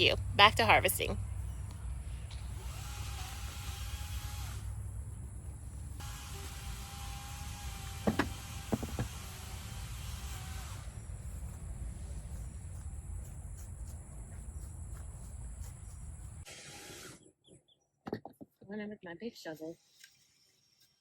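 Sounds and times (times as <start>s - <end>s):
outdoor background rumble: 0.0s - 16.5s.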